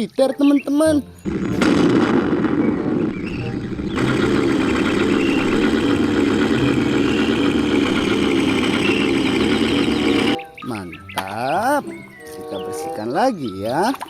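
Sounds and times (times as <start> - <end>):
tank engine rumbling: 1.3 - 10.4.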